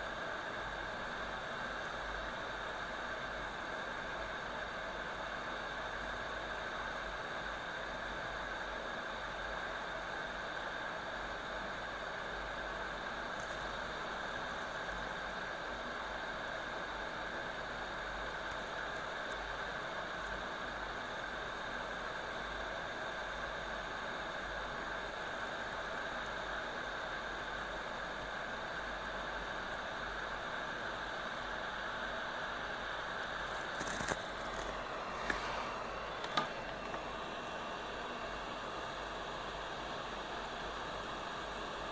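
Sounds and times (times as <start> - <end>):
hot air blower hissing: 25.8 - 39.4.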